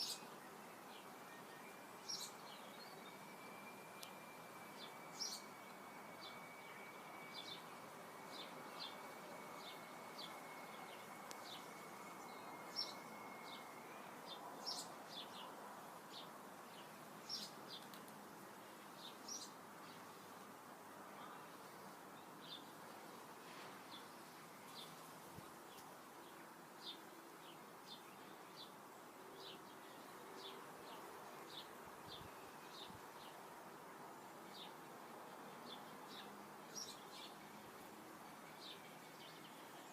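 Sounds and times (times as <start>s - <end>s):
birds chirping: 0.0s - 18.0s, 18.7s - 20.2s, 35.5s - 39.9s
faint steady high whine: 0.0s - 39.9s
soft background hiss: 0.0s - 39.9s.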